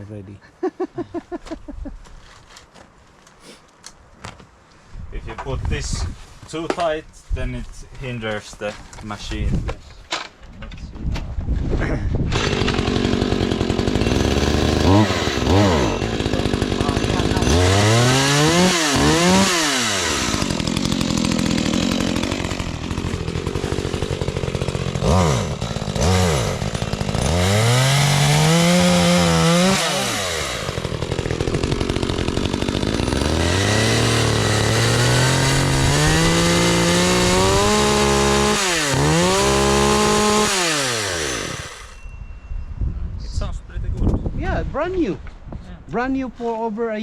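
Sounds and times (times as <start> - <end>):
chainsaw revving and idling: 12.3 - 42.0.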